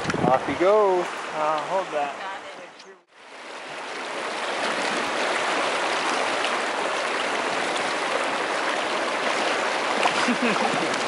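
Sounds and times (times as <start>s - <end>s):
river water rushing: 0.7s - 11.0s.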